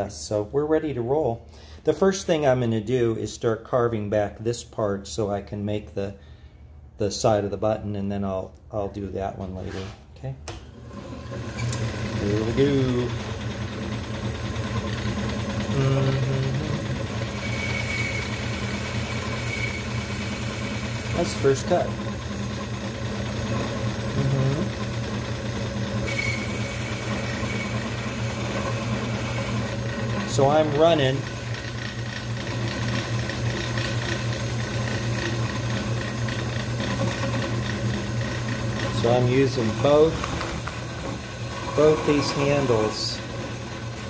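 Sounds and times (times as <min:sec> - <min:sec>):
lathe motor running: 0:10.9 - 0:44.0
high whine of cutting tool: 0:15.6 - 0:22.2, 0:26.0 - 0:31.3, 0:41.0 - 0:43.3.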